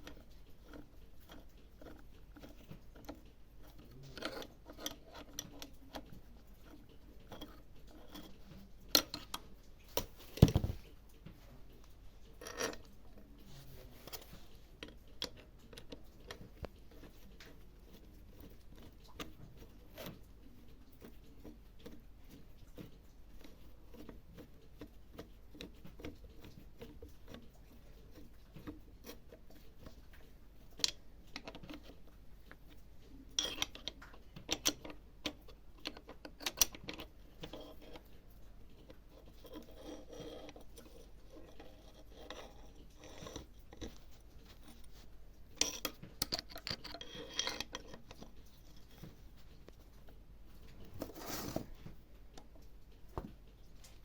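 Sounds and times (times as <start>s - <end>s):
metal parts clinking: 45.6s - 48.1s
hand tools clicking and knocking: 45.6s - 48.4s.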